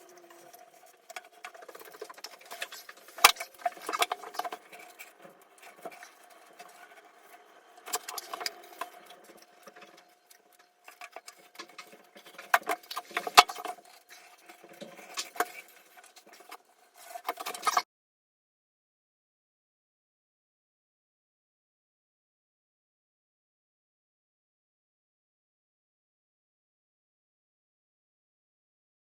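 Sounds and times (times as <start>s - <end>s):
faint steady hum: 0.0s - 17.6s.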